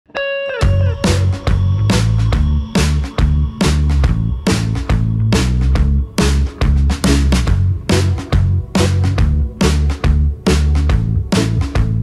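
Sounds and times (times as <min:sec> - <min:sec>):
beat with heavy bass: 0:00.6 - 0:12.0.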